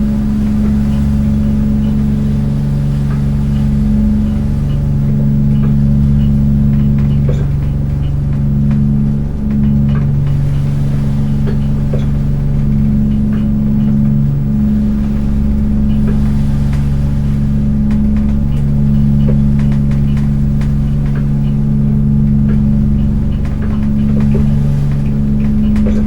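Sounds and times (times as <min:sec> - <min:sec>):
boat engine idling: 0:00.0 - 0:26.0
light ticks and rattles: 0:00.0 - 0:26.0.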